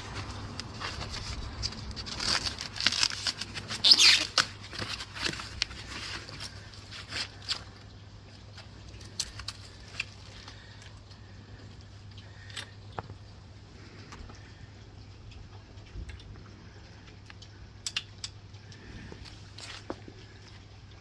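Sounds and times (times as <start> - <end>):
packaging rustling and crinkling: 0.0 - 11.1.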